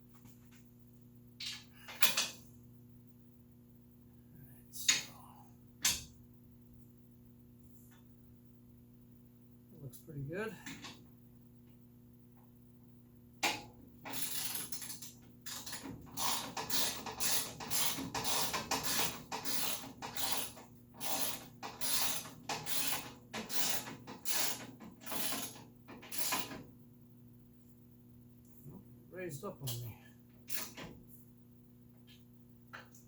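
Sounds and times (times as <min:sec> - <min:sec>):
ratchet wrench clicking: 0:14.1 - 0:26.5.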